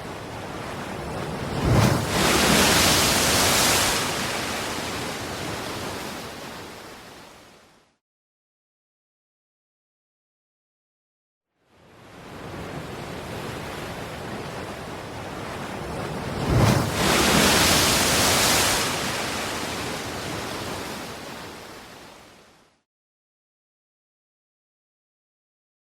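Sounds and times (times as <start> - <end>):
sea wave crashing: 1.2 - 6.8, 16.1 - 21.6.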